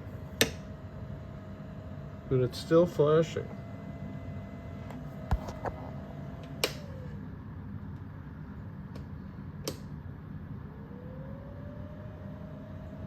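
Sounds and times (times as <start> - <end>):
low electrical hum: 0.0 - 13.0
electric motor whine: 10.8 - 13.0.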